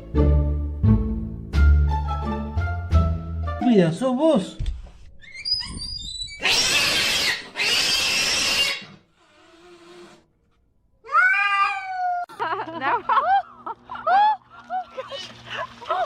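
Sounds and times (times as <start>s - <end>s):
cat hissing: 6.4s - 10.2s.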